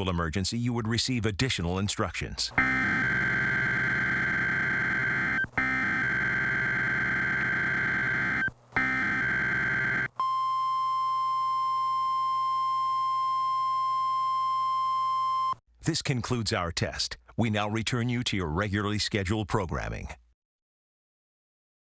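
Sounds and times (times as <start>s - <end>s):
buzzing data-signal bursts: 2.6s - 10.1s
steady single-pitch tone: 2.6s - 15.6s.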